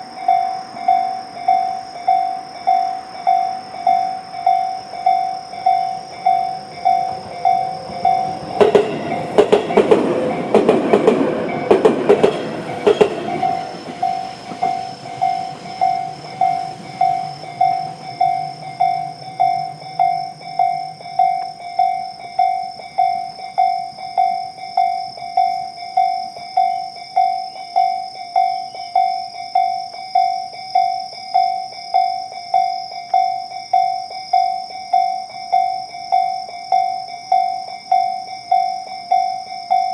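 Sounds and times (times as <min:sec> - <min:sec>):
level crossing warning bell: 0:00.0 - 0:39.9
train wheels clacking over rail joints: 0:06.8 - 0:21.5.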